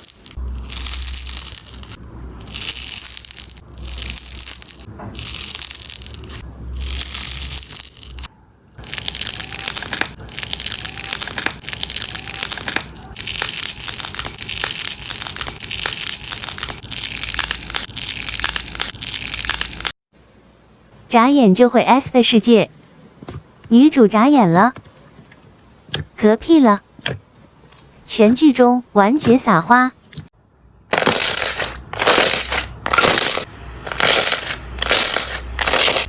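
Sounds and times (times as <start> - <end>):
crunchy slime crackling: 0.0 - 20.0, 30.9 - 36.0.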